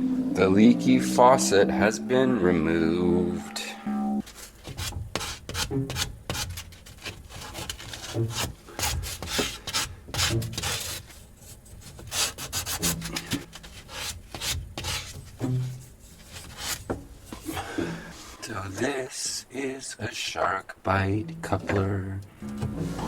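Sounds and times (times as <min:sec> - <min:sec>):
rubbing and scraping of tools: 0:04.2 - 0:18.8.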